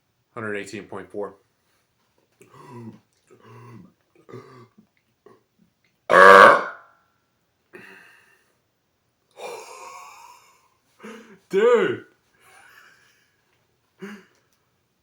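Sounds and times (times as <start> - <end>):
man burping loudly: 6.1 - 6.8.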